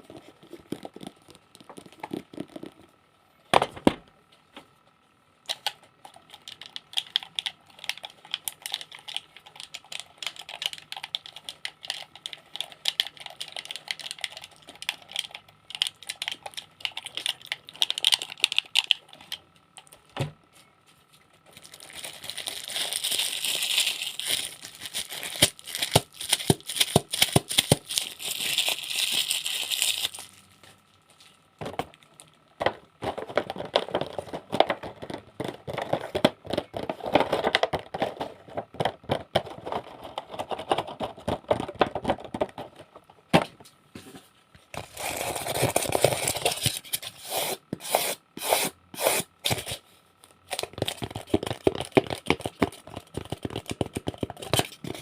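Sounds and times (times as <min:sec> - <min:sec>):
crinkling rustles: 0:20.7 - 0:41.4.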